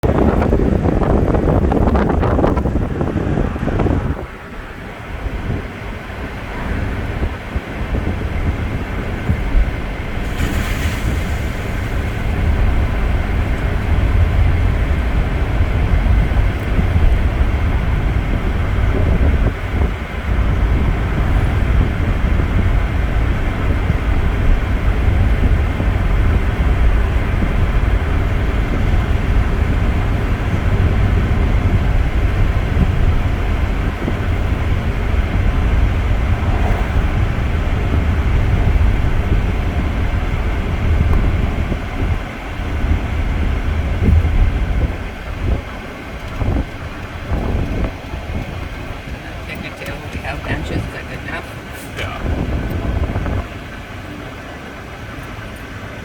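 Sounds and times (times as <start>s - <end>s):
car rumbling on the move: 0.0s - 56.0s
road and wind noise: 0.0s - 56.0s
short hiss: 10.2s - 12.3s.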